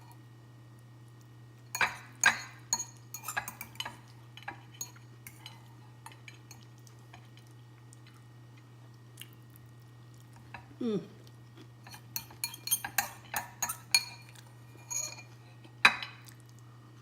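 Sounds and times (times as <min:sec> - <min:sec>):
cutlery clinking against a dish: 0:01.7 - 0:07.3, 0:11.8 - 0:16.2.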